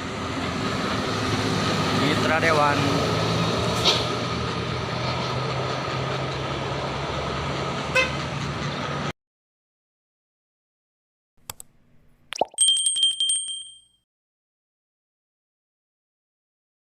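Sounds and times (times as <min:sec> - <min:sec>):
bus engine running: 0:00.0 - 0:09.1.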